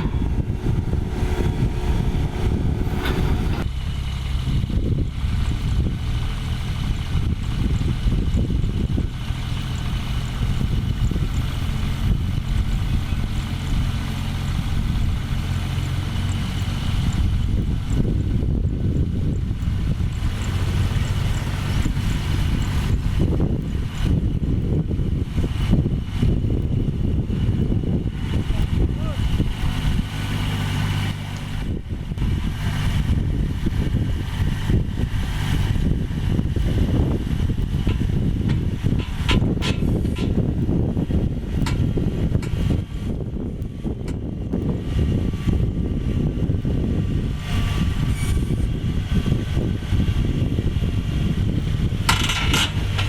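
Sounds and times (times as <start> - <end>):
diesel engine running: 0.0 - 53.0.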